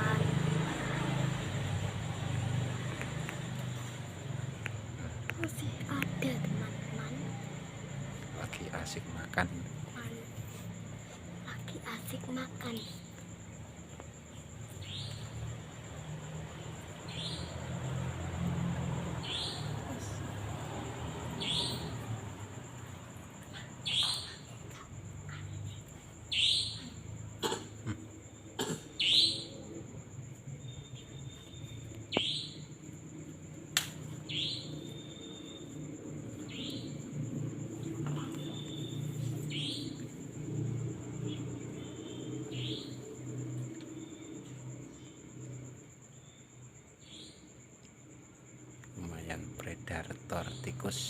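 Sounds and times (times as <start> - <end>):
bird chirping: 14.3 - 15.5, 16.7 - 22.5, 23.4 - 27.6, 28.9 - 29.8, 30.6 - 32.8, 34.1 - 40.5, 41.2 - 45.2
sharp clicks: 33.7 - 34.0.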